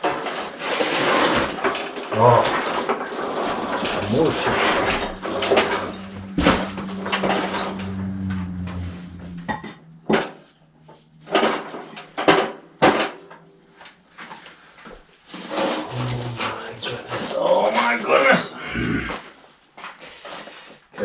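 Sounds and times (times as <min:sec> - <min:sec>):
low steady hum: 0:03.4 - 0:14.4.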